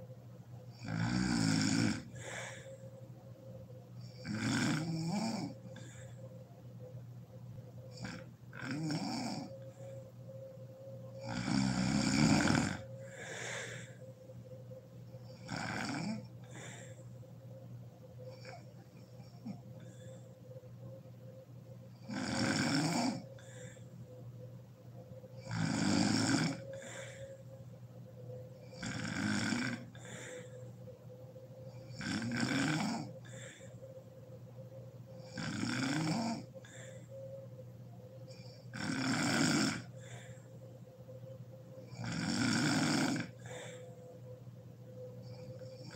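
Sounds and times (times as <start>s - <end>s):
woman snoring: 0.7s - 3.0s, 4.0s - 6.3s, 7.9s - 10.0s, 11.0s - 14.2s, 15.1s - 17.0s, 18.2s - 20.3s, 21.9s - 23.9s, 25.3s - 27.5s, 28.5s - 30.7s, 31.6s - 33.8s, 35.2s - 37.2s, 38.3s - 40.5s, 41.8s - 44.2s, 45.2s - 45.9s
breathy breath: 2.1s - 3.2s, 5.6s - 6.6s, 12.5s - 15.4s, 16.3s - 17.6s, 23.3s - 24.2s, 26.6s - 28.1s, 29.8s - 31.6s, 33.0s - 35.2s, 36.4s - 37.6s, 39.8s - 41.8s, 43.3s - 44.3s.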